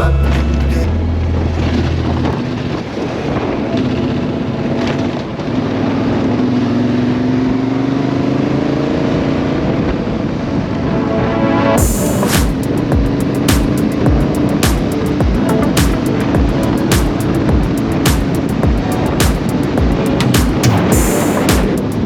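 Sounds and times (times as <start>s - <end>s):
wind and road noise: 1.4s - 11.0s
motorcycle engine running: 11.8s - 22.0s.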